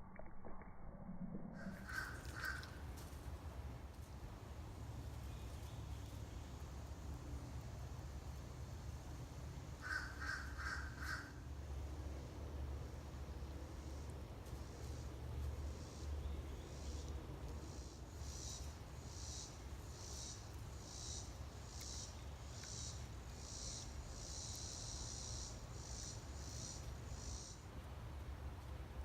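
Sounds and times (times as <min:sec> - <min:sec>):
low rumble: 0:00.0 - 0:02.2
insect chirping: 0:15.7 - 0:27.6.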